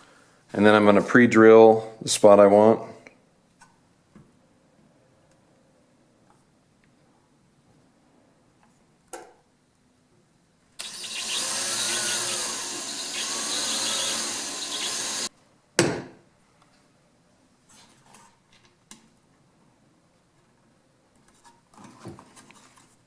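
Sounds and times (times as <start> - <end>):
power drill running: 10.8 - 15.3.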